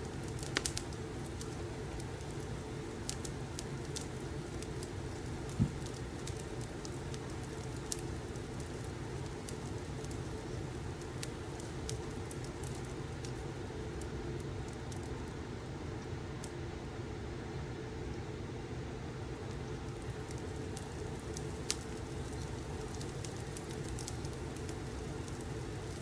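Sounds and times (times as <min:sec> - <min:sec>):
fire crackling and popping: 0:00.0 - 0:16.6, 0:19.2 - 0:26.0
low fire rumble: 0:00.0 - 0:26.0
soft low thump: 0:05.6 - 0:05.9.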